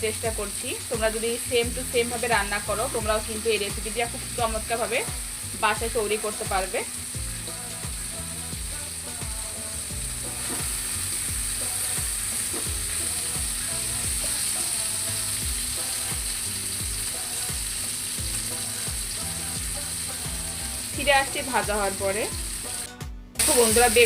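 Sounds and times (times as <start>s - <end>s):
eggplant sizzling in oil: 0.0s - 24.0s.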